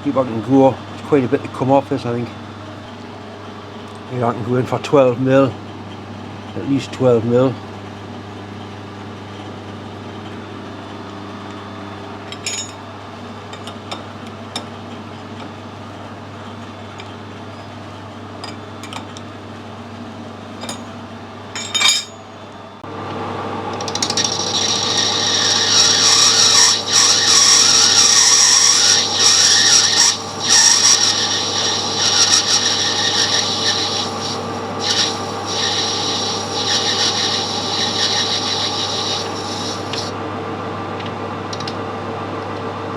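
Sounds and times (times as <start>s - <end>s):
lathe running hum: 22.6s - 42.9s
lathe tool scraping metal: 23.8s - 40.2s.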